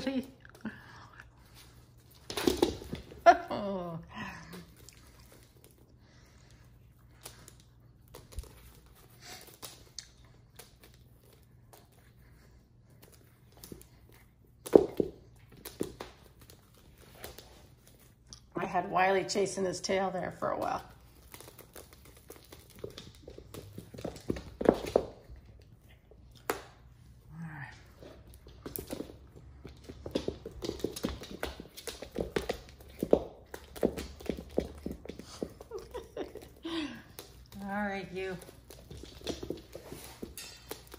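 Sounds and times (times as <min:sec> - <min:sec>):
cat playing rustles and taps: 0:04.7 - 0:18.3, 0:20.4 - 0:27.2, 0:27.9 - 0:40.9.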